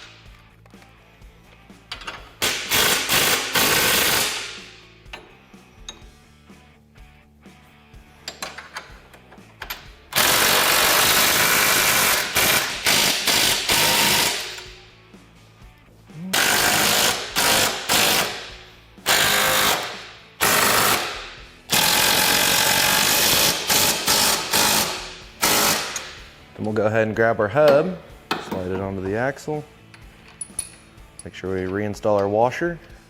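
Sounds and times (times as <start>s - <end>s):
impact wrench hammering: 2.0s - 6.0s, 9.6s - 14.8s, 16.4s - 26.2s.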